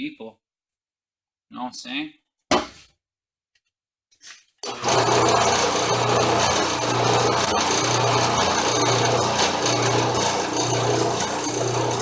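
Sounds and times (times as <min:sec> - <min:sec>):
drill press motor running: 0:04.6 - 0:12.0.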